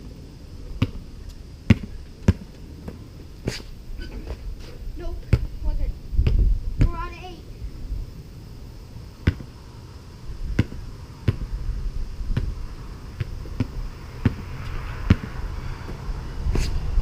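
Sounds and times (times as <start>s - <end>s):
basketball bouncing on hard surface: 0.8s - 1.0s, 1.7s - 3.6s, 5.2s - 5.6s, 9.2s - 9.5s, 10.5s - 11.5s, 12.3s - 12.6s, 13.2s - 16.7s.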